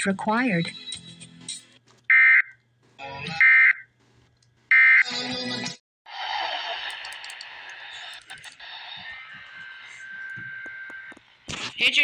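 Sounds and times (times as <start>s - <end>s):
radio audio: 4.7s - 12.0s.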